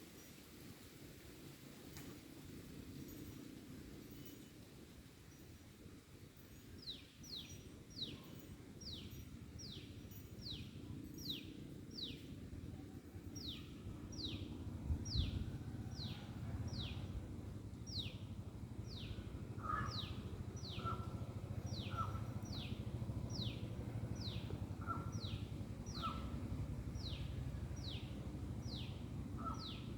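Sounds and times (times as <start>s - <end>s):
steady low rumble: 6.8s - 29.9s
lower bird call: 13.4s - 29.9s.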